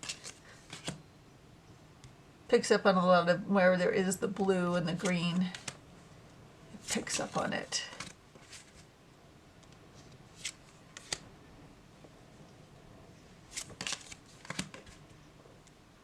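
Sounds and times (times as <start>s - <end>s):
cards sliding: 0.0s - 1.0s, 5.0s - 5.8s, 6.8s - 8.9s, 10.0s - 11.2s, 13.5s - 15.0s.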